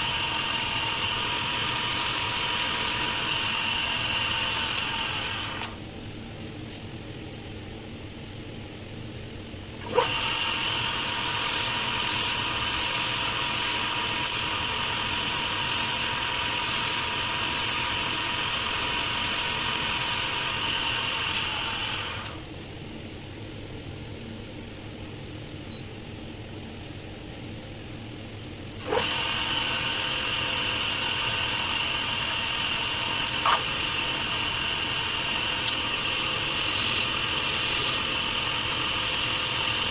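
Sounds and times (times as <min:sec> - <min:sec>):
wood lathe whine: 0:00.0 - 0:05.6, 0:10.0 - 0:22.3, 0:28.9 - 0:39.9.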